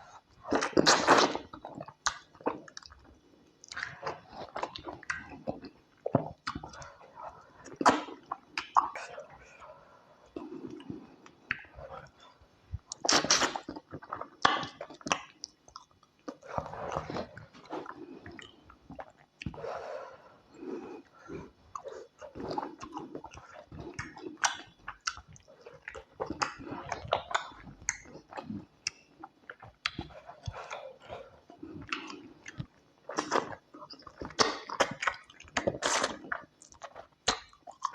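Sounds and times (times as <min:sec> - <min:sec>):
person chewing and slurping: 0:10.3 - 0:19.7, 0:20.6 - 0:37.9.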